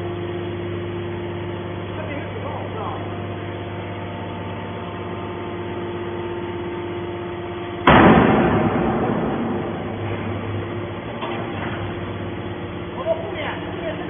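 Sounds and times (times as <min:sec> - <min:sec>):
baler machine humming: 0:00.0 - 0:14.0
loud crash: 0:07.8 - 0:10.9.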